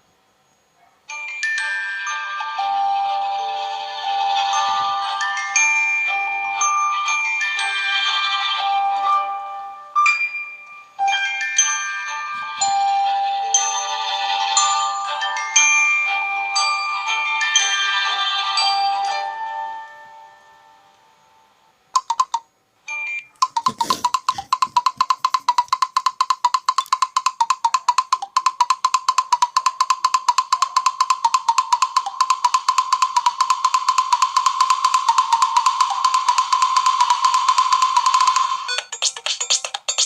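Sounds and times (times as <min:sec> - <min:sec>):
chiming ringtone: 0:01.1 - 0:24.8, 0:30.3 - 0:40.0
clicky percussive ringtone: 0:22.0 - 0:40.0.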